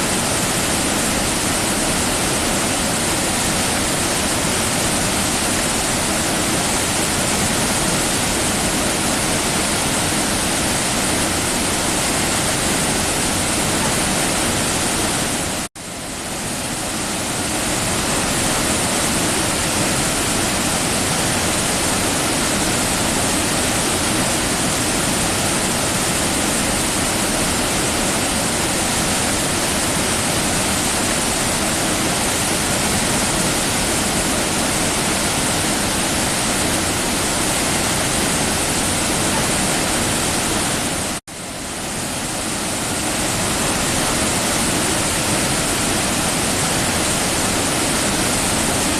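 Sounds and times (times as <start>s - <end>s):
waterfall roaring: 0.0s - 48.9s.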